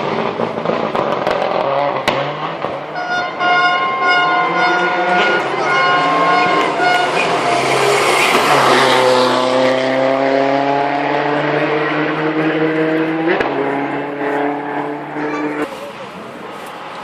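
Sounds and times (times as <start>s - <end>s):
rally car engine: 0.0s - 17.0s
tyre and road hiss: 15.4s - 17.0s.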